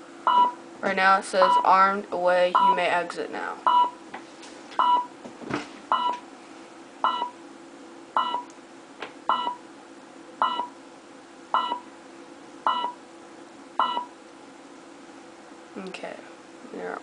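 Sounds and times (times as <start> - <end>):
alarm keypad beeping: 2.6 - 2.8, 8.2 - 8.5, 9.3 - 9.6, 10.4 - 10.7, 11.6 - 11.8, 12.7 - 13.0, 13.8 - 14.1.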